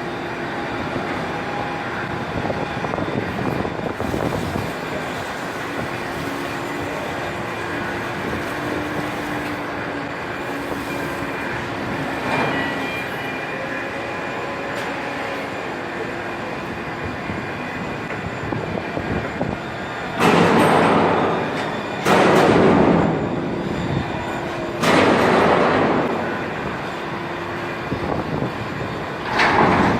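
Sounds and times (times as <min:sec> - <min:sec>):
machinery humming: 0:00.0 - 0:29.9.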